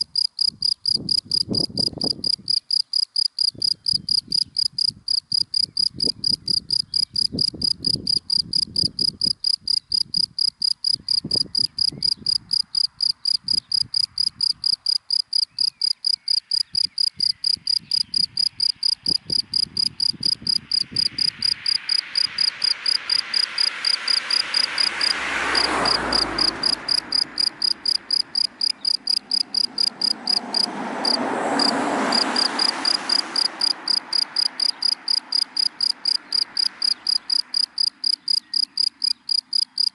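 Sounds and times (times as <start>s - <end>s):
cricket chirping: 0.0s - 39.9s
cars passing: 10.2s - 39.9s.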